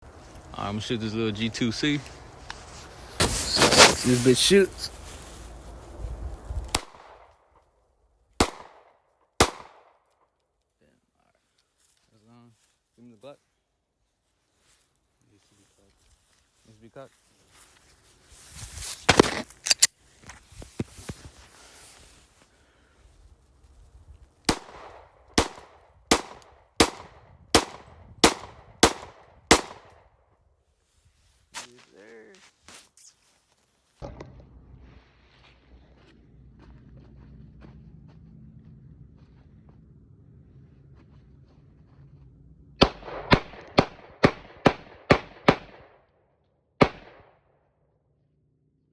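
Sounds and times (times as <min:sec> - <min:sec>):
pistol shots with echo: 0:08.4 - 0:09.9, 0:24.5 - 0:29.9, 0:42.8 - 0:46.0, 0:46.8 - 0:47.3.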